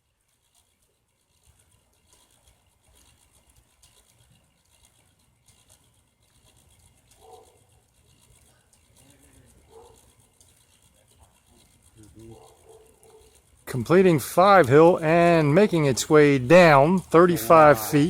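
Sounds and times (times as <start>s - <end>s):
toy roller coaster chain clicking: 0.0s - 18.0s.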